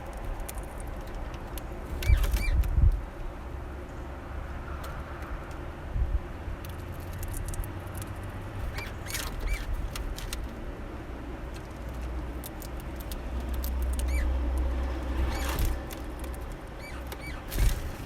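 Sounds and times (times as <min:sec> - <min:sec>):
finches calling: 0:14.0 - 0:14.3, 0:16.7 - 0:17.7.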